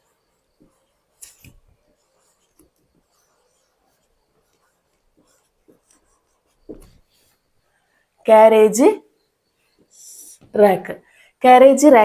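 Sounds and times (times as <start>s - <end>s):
faint scratches and taps: 0.0s - 7.4s.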